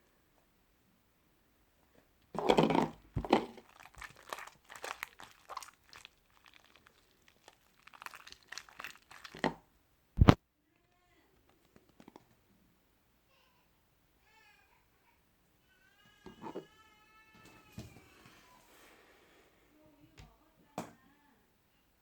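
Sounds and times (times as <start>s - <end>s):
crinkling and rustling: 2.3s - 9.6s.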